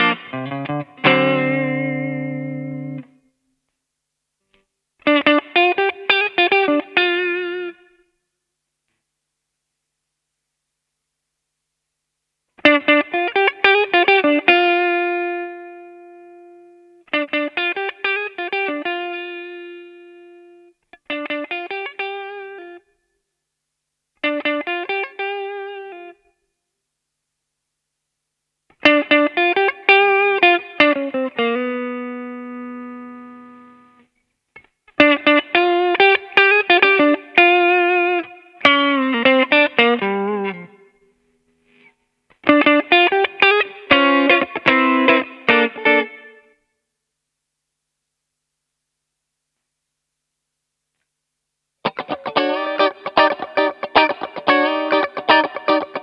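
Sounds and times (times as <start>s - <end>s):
electric guitar lead phrases: 0.0s - 3.2s, 5.0s - 8.0s, 12.6s - 22.8s, 24.2s - 26.2s, 28.8s - 34.0s, 35.0s - 41.0s, 41.6s - 46.6s, 51.8s - 56.0s.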